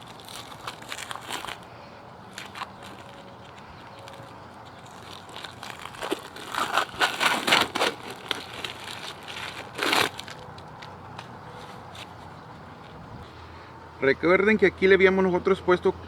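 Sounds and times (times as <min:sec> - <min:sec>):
adhesive tape peeling: 0:00.0 - 0:01.7, 0:02.3 - 0:12.3.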